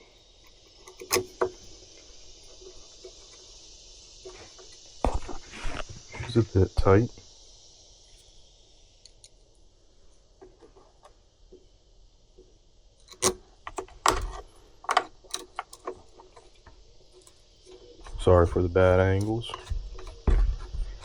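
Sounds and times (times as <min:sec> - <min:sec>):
hand tools clicking and rattling: 0:13.0 - 0:16.6, 0:17.2 - 0:20.2.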